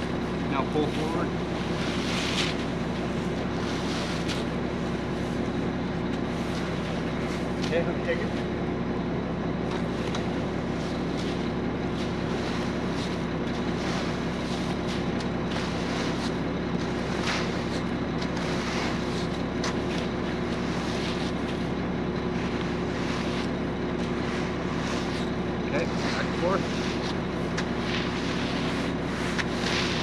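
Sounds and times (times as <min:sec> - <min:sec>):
engine humming: 0:00.0 - 0:30.0
scraping strokes: 0:00.8 - 0:04.5, 0:10.8 - 0:21.7, 0:22.3 - 0:30.0.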